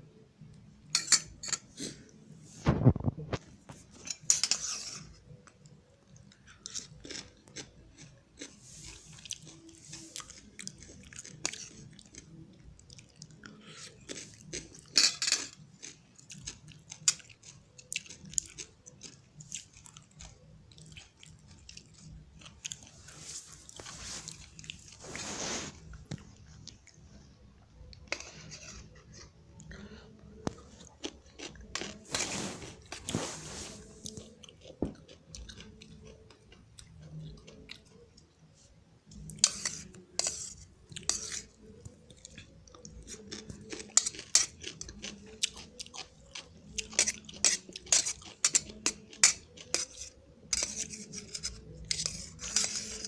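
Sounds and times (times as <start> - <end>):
utensils clicking and scraping dishes: 0.9 - 1.7, 3.8 - 5.1, 14.8 - 15.6, 39.2 - 41.6, 46.4 - 53.0
raw vegetables crunching: 6.4 - 12.3, 30.6 - 38.0, 42.2 - 50.0.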